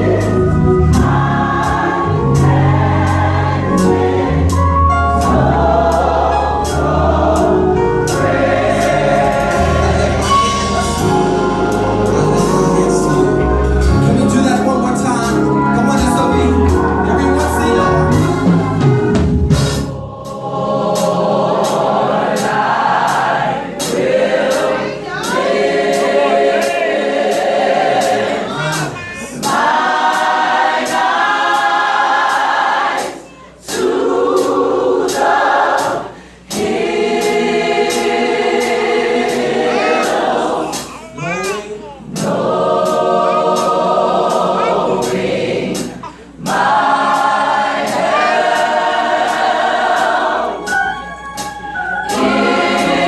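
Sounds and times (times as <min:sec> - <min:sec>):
low accompaniment: 0:00.0 - 0:31.8
gospel choir singing in harmony: 0:00.0 - 0:53.0.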